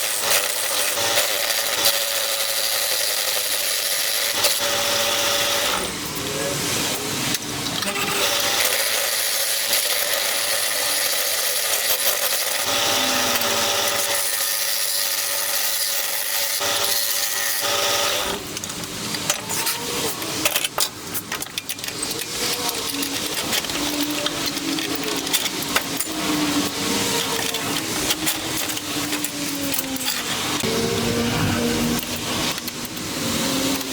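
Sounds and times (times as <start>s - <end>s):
power tool cutting wood: 0.0s - 6.0s, 6.6s - 18.5s, 21.9s - 33.9s
clicks and scraping: 18.4s - 33.9s.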